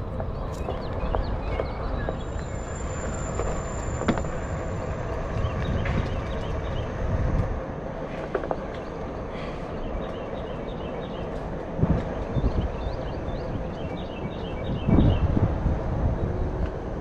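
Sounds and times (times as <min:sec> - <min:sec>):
faint steady tones: 0:00.0 - 0:11.8
road and wind rumble: 0:00.0 - 0:17.0.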